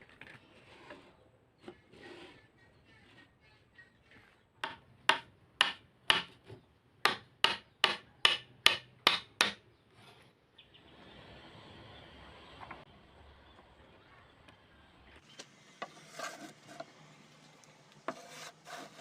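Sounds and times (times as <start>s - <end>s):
hammer striking wood: 4.6s - 6.4s, 7.0s - 9.6s.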